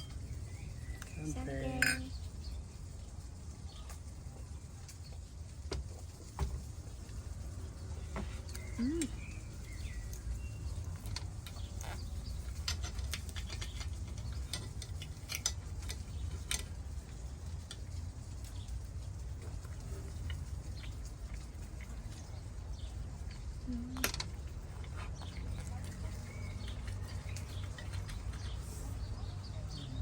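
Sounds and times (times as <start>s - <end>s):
tableware clicking and tapping: 1.8s - 2.1s.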